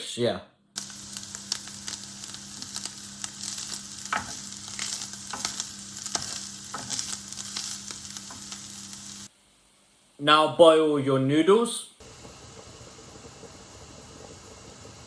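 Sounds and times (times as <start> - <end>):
food sizzling in a pan: 0.8 - 10.2, 12.0 - 15.0
stirring knocks: 4.0 - 8.6.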